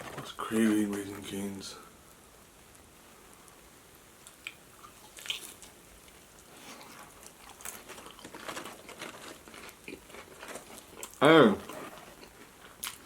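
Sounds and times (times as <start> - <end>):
person biting and chewing food: 4.3 - 5.8, 6.6 - 13.0.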